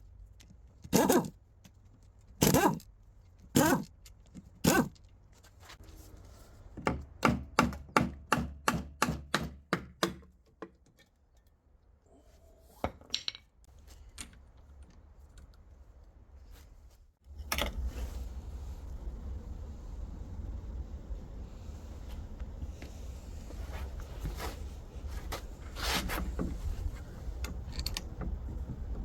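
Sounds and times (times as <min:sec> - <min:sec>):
steady hiss with low hum: 0:13.7 - 0:29.0.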